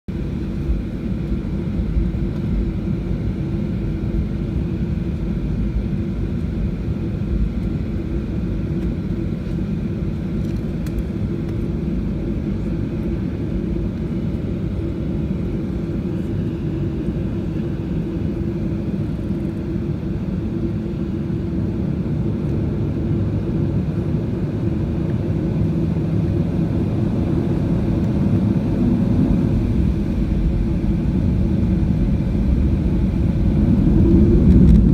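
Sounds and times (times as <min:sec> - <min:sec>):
airplane cabin engine rumble: 0:00.1 - 0:34.9.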